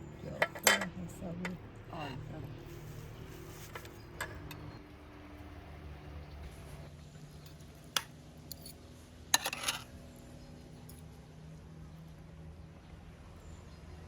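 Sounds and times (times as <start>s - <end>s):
cutlery and dishes clinking: 0.4s - 0.9s, 9.4s - 9.9s.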